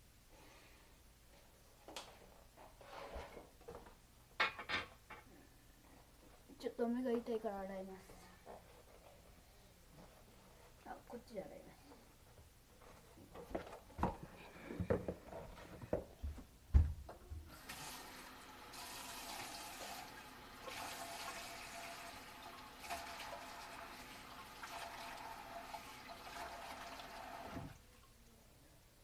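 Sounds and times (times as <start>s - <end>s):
tap water running: 17.5s - 28.1s.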